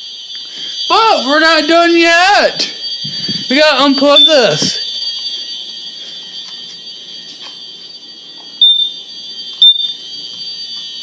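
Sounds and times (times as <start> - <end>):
smoke alarm short beeps: 0.0 - 11.0
smoke alarms shrilling: 0.0 - 11.0.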